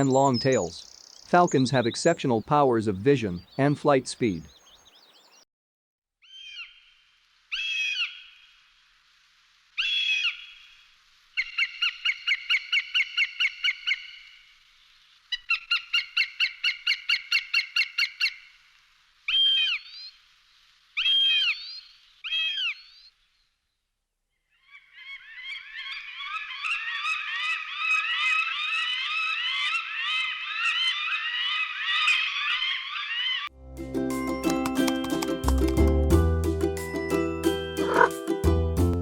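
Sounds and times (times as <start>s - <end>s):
falcon calling: 37.8s - 38.1s.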